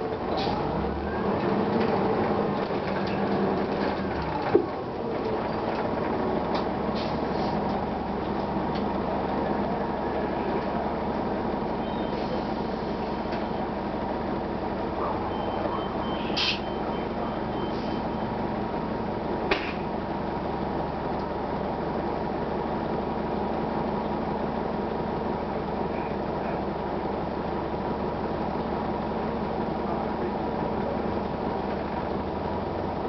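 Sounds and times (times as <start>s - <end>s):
bus diesel engine drone: 0.0s - 33.0s.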